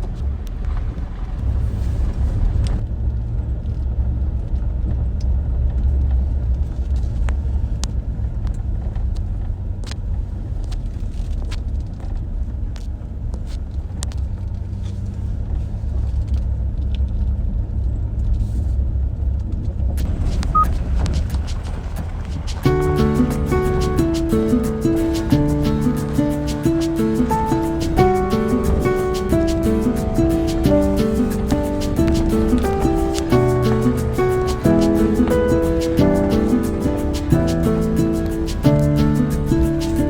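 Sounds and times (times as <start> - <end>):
car driving rumble: 0.0 - 40.0.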